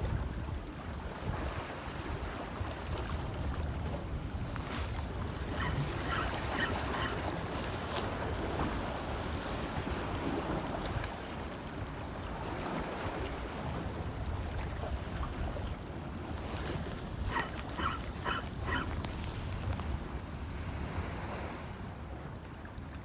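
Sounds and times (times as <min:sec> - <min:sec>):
wind rumbling on microphone: 0:00.0 - 0:21.5.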